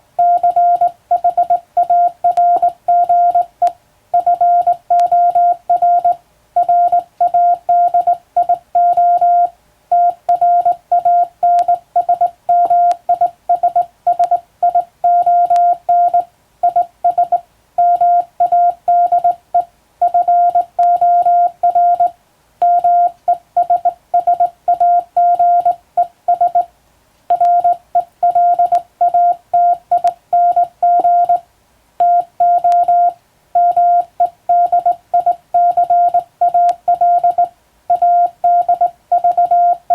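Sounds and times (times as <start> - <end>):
morse code tone: 0.2 - 3.5, 4.2 - 26.7, 27.3 - 31.4, 32.0 - 39.9.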